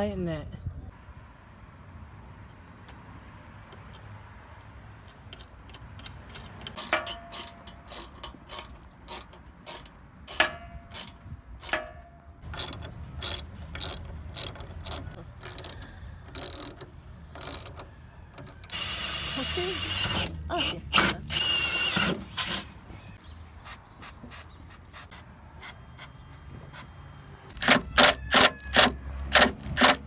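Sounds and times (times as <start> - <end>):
ratchet wrench clicking: 12.5 - 22.2, 27.5 - 30.0.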